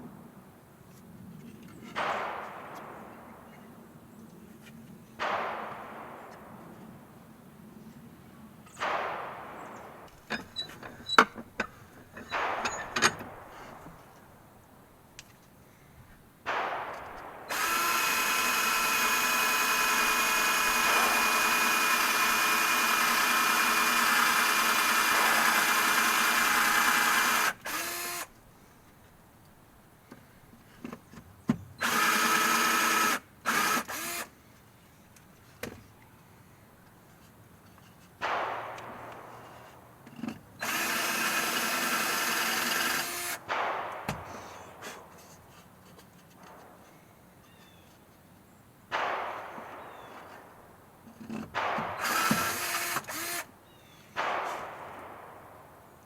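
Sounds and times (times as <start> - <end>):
handling clicks and knocks: 10.0 - 16.2, 36.8 - 40.6, 49.0 - 53.1
electric drill running: 17.5 - 28.3, 31.8 - 34.3, 40.6 - 43.4, 52.0 - 53.5.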